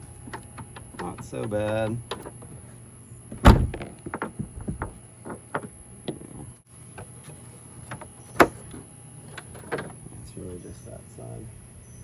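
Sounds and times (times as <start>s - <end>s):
tailgate latch clicking: 0.3s - 2.5s, 3.3s - 6.4s
loud clunk: 3.3s - 6.2s.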